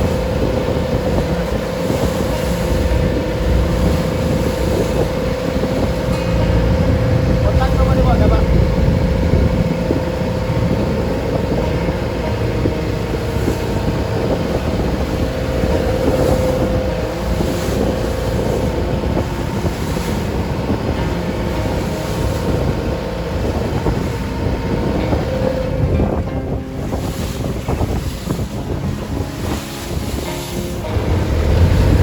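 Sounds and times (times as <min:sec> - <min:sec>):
boat engine droning: 0:00.0 - 0:32.0
sea rushing: 0:00.0 - 0:32.0
wind buffeting microphone: 0:00.0 - 0:32.0.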